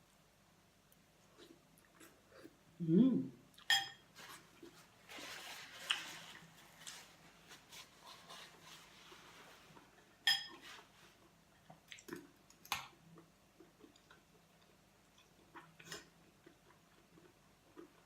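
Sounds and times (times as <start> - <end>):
spoon clinking against bowl: 3.7 - 4.0, 10.2 - 10.6
eating and slurping soup: 13.2 - 18.0.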